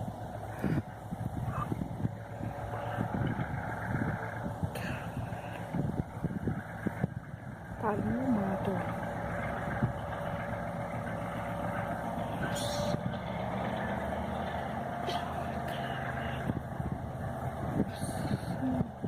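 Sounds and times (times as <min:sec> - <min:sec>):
diesel locomotive engine droning: 0:00.0 - 0:19.0.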